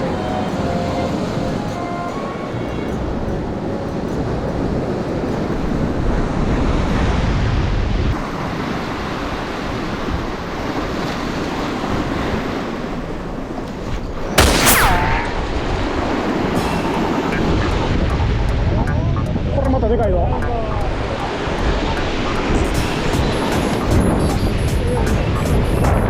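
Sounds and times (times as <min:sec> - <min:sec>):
sea surf: 0:00.0 - 0:26.0
wind noise on microphone: 0:00.0 - 0:26.0
falling whistle-like sound: 0:14.4 - 0:15.6.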